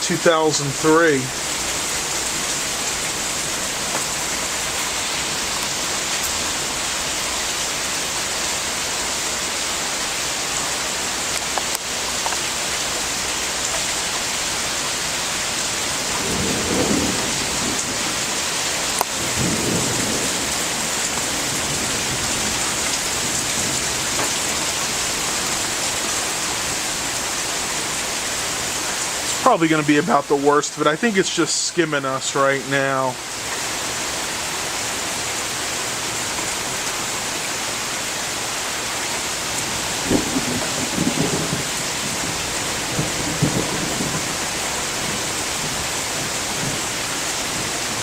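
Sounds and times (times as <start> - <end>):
heavy rain pouring: 0.0 - 48.0
thunder rumbling: 16.0 - 25.7, 39.6 - 48.0.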